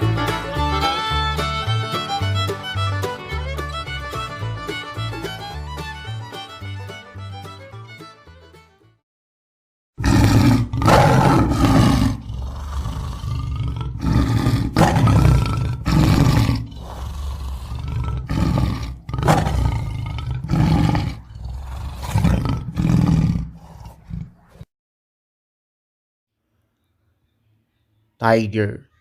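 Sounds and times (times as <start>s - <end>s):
big cat roaring and growling: 10.0s - 24.6s.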